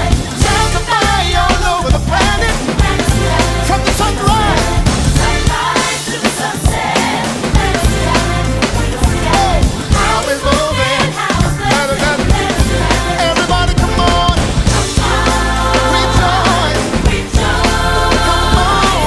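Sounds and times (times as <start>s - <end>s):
heavy bass: 0.0s - 5.8s, 6.7s - 19.0s
drum kit beat: 0.0s - 19.0s
song with singing: 0.0s - 19.0s.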